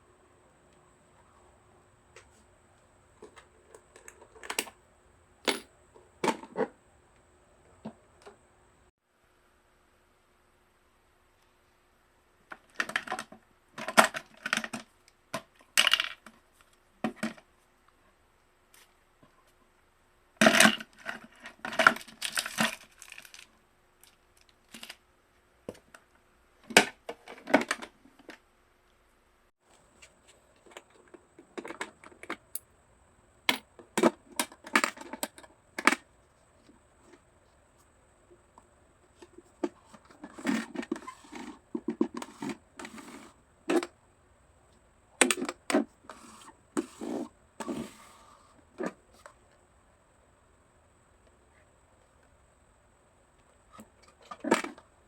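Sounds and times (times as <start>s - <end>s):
tools scraping: 39.2s - 43.9s, 46.1s - 48.9s.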